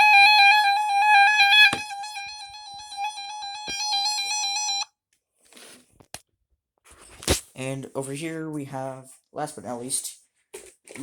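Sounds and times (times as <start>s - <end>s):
electronic alarm tone warbling: 0.0s - 4.9s.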